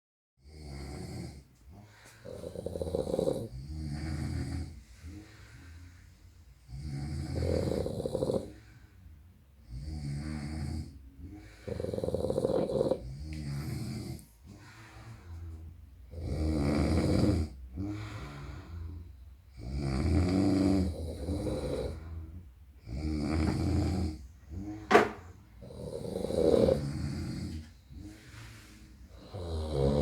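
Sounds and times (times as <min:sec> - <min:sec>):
loud rattling snores: 0:00.4 - 0:01.4, 0:02.2 - 0:04.8, 0:06.7 - 0:08.6, 0:09.7 - 0:14.2, 0:16.1 - 0:17.6, 0:19.5 - 0:22.1, 0:22.8 - 0:24.9, 0:25.6 - 0:27.6, 0:29.1 - 0:30.0
soft snores: 0:00.4 - 0:30.0.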